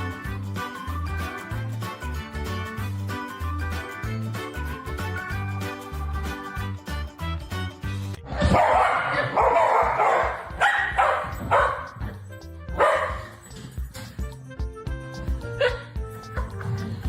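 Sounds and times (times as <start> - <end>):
background music: 0.0 - 17.0
dog barking: 8.3 - 13.4, 15.6 - 16.5.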